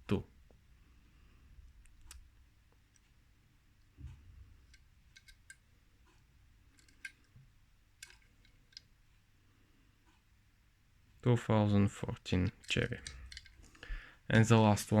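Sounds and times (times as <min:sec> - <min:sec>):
toy car clicks and taps: 0:04.6 - 0:05.6, 0:06.7 - 0:07.4, 0:08.0 - 0:08.9, 0:12.5 - 0:13.6.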